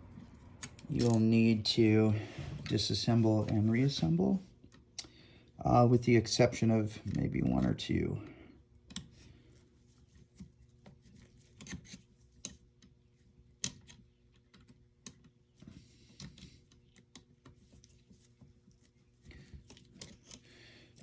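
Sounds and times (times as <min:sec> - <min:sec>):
small tools clicking and clinking: 0:00.6 - 0:01.3.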